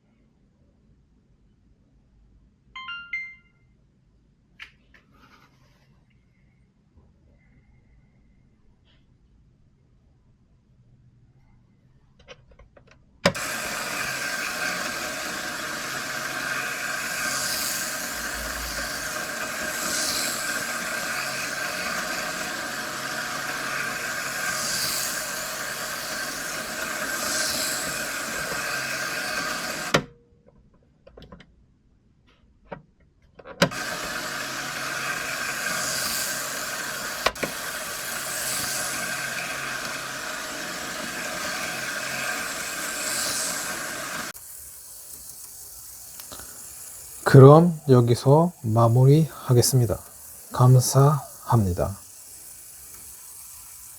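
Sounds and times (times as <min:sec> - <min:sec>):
model train motor whirring: 0:13.2 - 0:30.1, 0:33.6 - 0:53.9
bright hiss: 0:13.3 - 0:30.0, 0:33.7 - 0:53.9.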